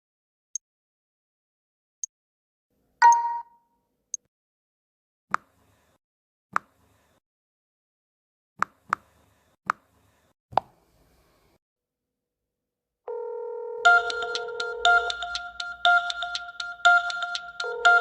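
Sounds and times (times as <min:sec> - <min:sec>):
phone ringtone melody: 0:03.0 - 0:03.5, 0:13.1 - 0:18.0
touch-screen clicks: 0:03.0 - 0:03.5
phone call tone: 0:13.1 - 0:15.1, 0:17.6 - 0:18.0.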